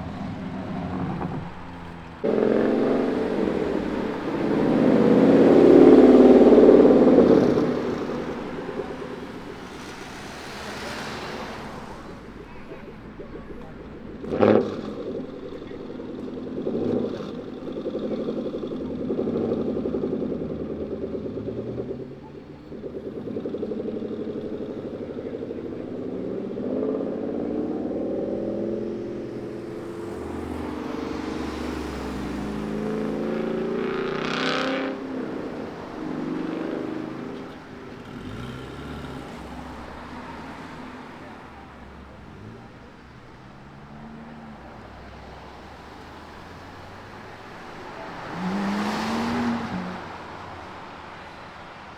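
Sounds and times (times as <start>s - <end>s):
car engines revving: 0.0s - 51.9s.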